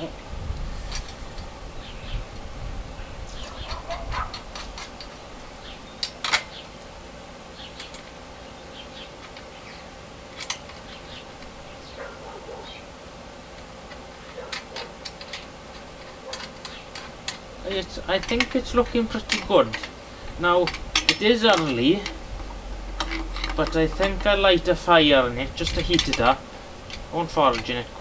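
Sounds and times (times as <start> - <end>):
metal parts clicking and knocking: 3.6 - 5.2, 6.0 - 6.6, 7.7 - 8.2, 9.2 - 9.6, 10.3 - 11.7, 13.6 - 28.0.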